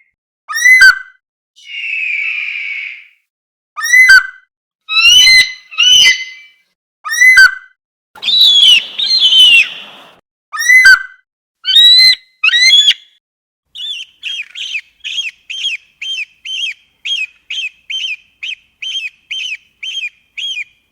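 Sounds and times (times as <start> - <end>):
eagle screaming: 1.6 - 3.1, 4.9 - 6.5, 8.2 - 11.0, 11.7 - 13.0
eagle quick chirps: 8.2 - 10.2, 13.8 - 20.8.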